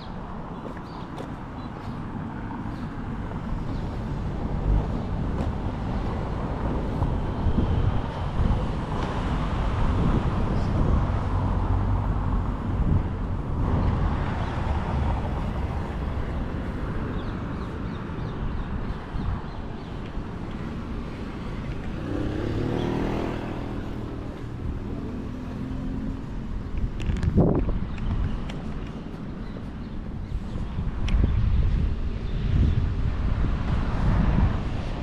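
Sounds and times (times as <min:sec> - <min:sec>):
cars rumbling: 0:00.0 - 0:35.0
car engine passing: 0:20.6 - 0:26.6.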